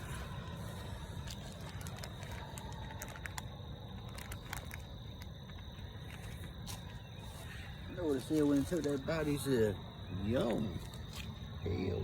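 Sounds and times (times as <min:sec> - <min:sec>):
steady low rumble: 0:00.0 - 0:07.9.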